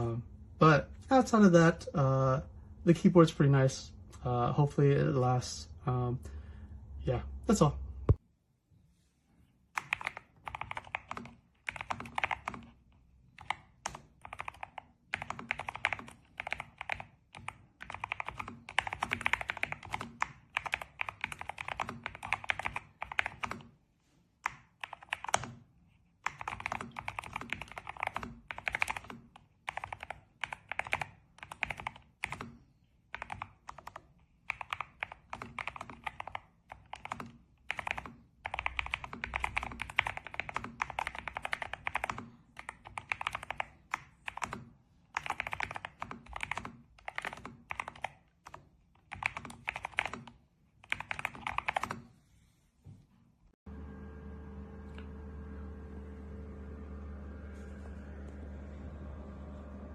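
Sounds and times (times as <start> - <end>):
mechanical keyboard typing: 9.8 - 23.7, 24.4 - 25.6, 26.2 - 52.0.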